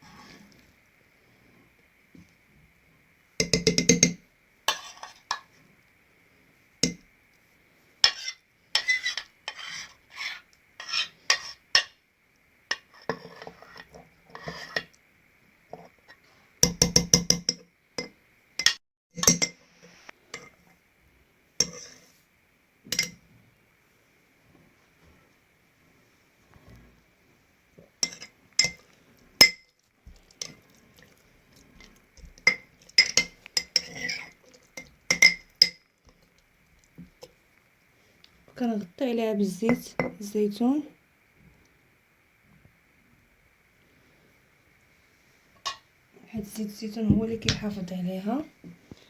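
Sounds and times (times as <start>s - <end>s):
utensil clinking against bowl and jar: 31.8s - 36.2s.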